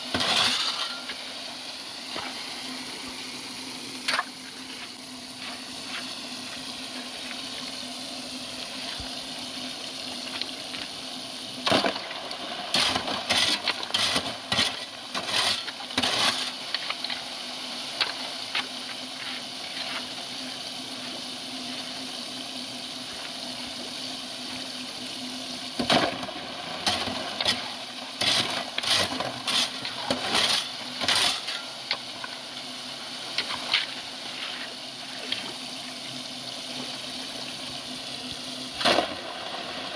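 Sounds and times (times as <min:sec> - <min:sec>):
running water: 0:00.0 - 0:39.9
sharp splashing and clattering: 0:00.1 - 0:01.2, 0:11.6 - 0:17.2, 0:25.8 - 0:32.4.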